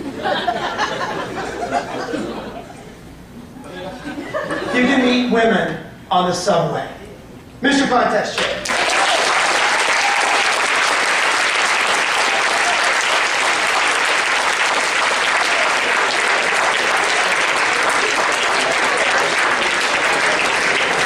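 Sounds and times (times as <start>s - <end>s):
audience applauding: 8.6s - 21.0s.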